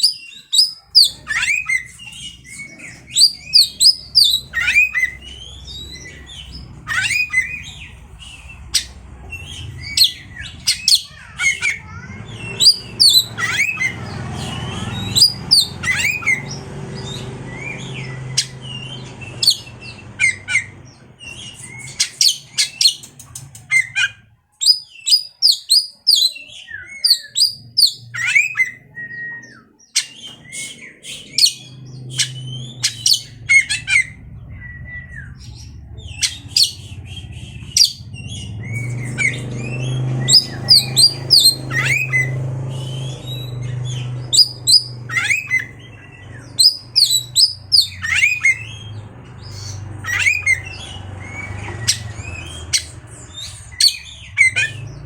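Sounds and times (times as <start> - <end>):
bird singing: 0.0 - 55.0
low steady hum: 31.6 - 55.0.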